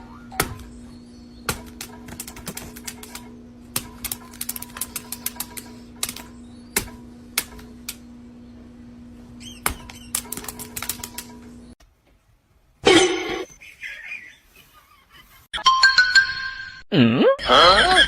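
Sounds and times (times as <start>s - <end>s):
steady low hum: 0.0s - 13.5s.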